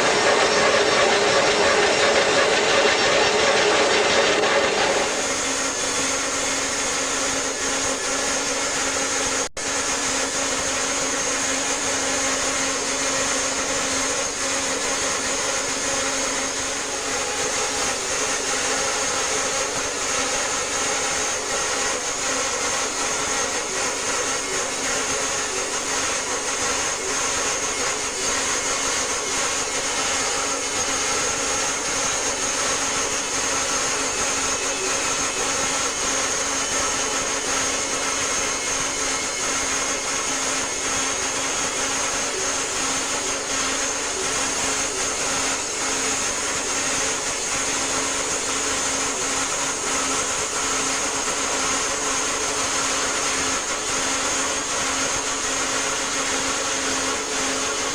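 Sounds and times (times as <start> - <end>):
high-pitched whine: 0.0 - 9.4
bandsaw mill running: 0.0 - 57.9.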